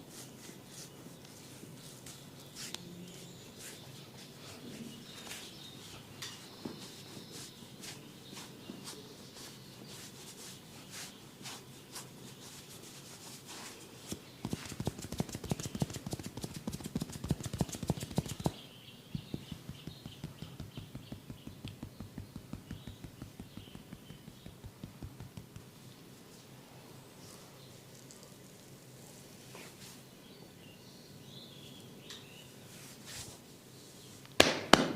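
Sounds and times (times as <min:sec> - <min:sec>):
percussive massage tapping: 0:14.1 - 0:25.7, 0:34.4 - 0:34.9.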